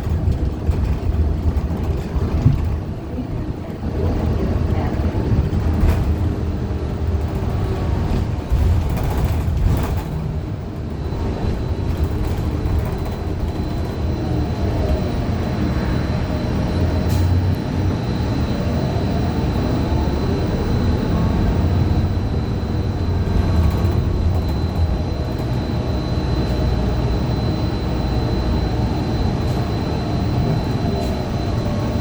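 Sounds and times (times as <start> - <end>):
bus engine low rumble: 0.0 - 32.0
faint high whine: 10.5 - 32.0.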